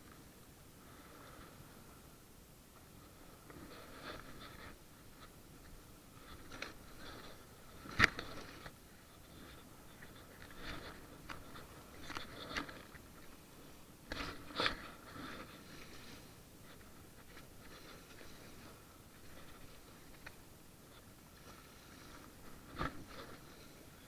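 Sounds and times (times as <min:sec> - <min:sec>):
faint scrapes and clicks: 0:02.7 - 0:24.0.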